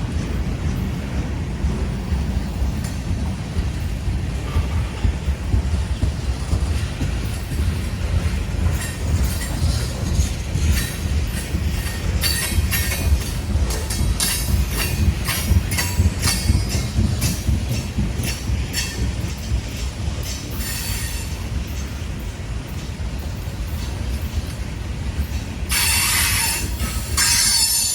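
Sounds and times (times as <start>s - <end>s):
train wheels rumbling on rail: 0.0s - 27.9s
high wheel squeals: 25.7s - 27.9s.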